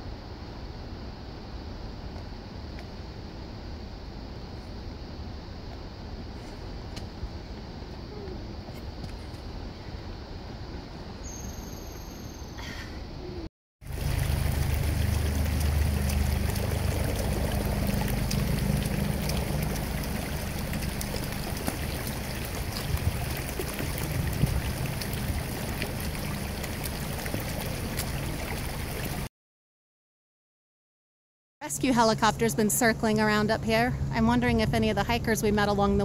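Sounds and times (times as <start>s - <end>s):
helicopter droning overhead: 13.9s - 28.5s
waterfall rushing: 13.9s - 29.3s.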